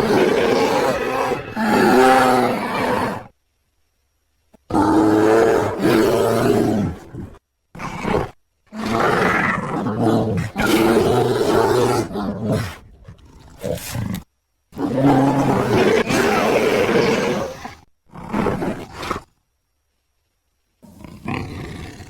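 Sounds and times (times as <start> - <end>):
bear calling: 0.0 - 3.3.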